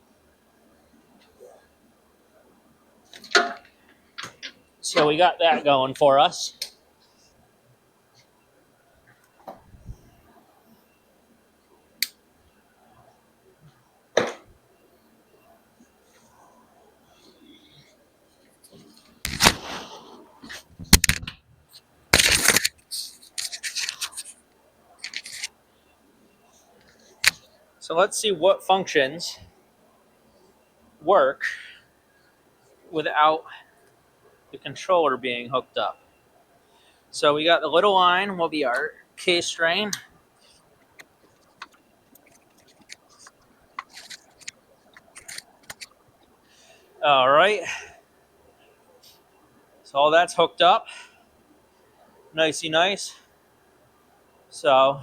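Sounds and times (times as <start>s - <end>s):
hands rustling wiring: 3.0s - 7.4s, 15.8s - 25.6s, 26.2s - 27.6s, 38.7s - 46.9s
scratching and rubbing of parts: 3.1s - 7.4s, 17.2s - 25.6s, 38.7s - 46.6s.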